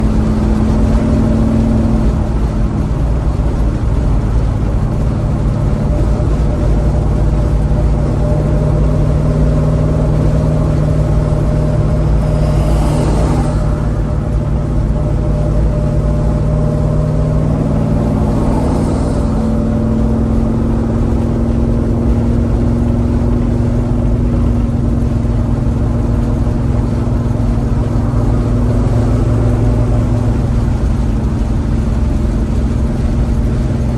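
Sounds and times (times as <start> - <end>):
car engine idling: 0.0 - 33.9
brief rushing noises: 11.8 - 15.4.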